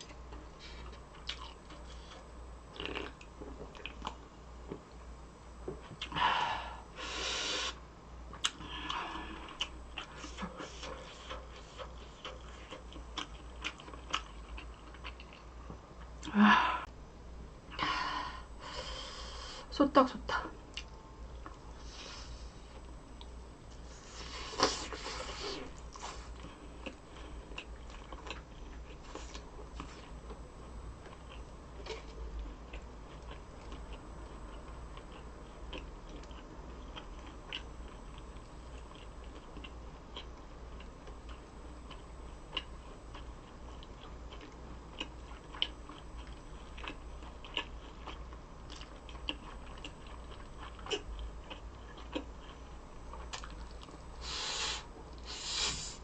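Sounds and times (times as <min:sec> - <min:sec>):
close chewing with wet clicks: 0:00.0 - 0:01.8, 0:09.4 - 0:16.2, 0:25.7 - 0:30.4, 0:31.0 - 0:54.1.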